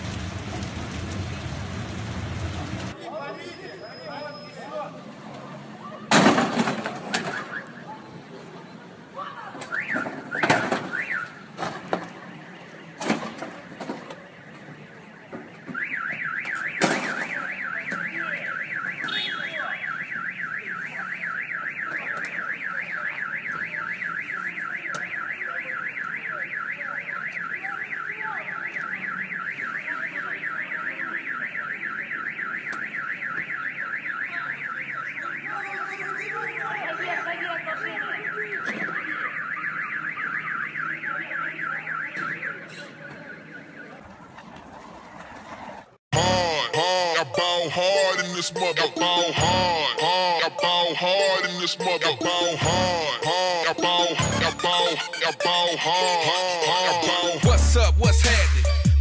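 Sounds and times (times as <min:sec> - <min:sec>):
electronic alarm warbling: 0:46.1 - 0:59.0.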